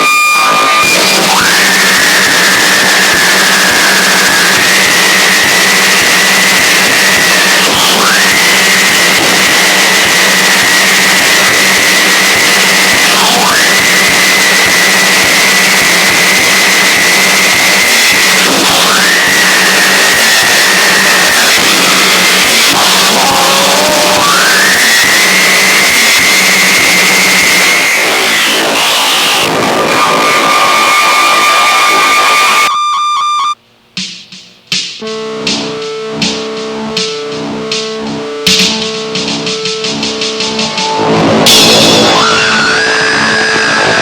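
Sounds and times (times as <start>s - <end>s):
piercing high sweeping tone: 0.0s - 33.6s, 35.0s - 44.0s
distorted static noise music: 0.0s - 44.0s
low hum: 35.0s - 44.0s.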